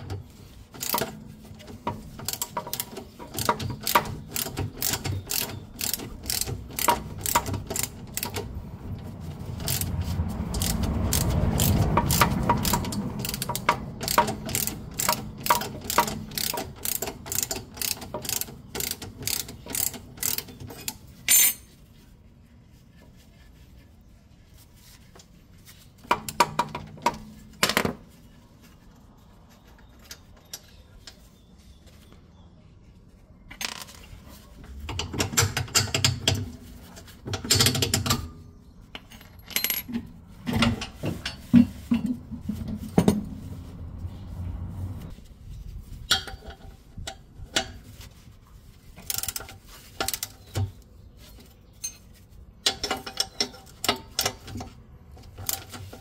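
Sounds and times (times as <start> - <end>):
metal tools clinking: 11.6 - 21.8, 38.9 - 42.2, 51.7 - 54.6.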